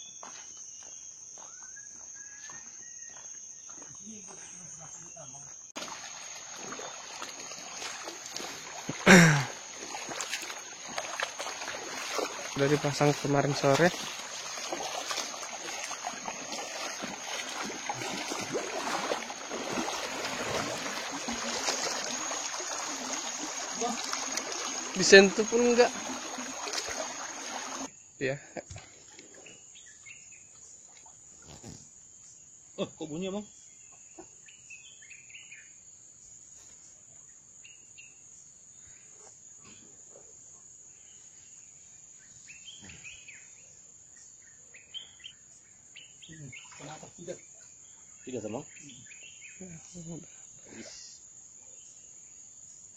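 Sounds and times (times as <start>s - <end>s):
bird chirps: 0.0s - 5.5s, 44.4s - 49.6s
insects droning: 0.0s - 52.9s
river water flowing: 5.8s - 27.9s
small water splashes: 5.8s - 27.9s, 46.4s - 47.2s.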